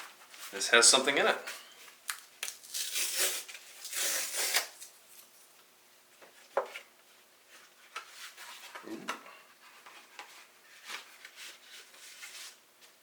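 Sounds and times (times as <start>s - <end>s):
cardboard and paper rustling: 7.5s - 13.0s.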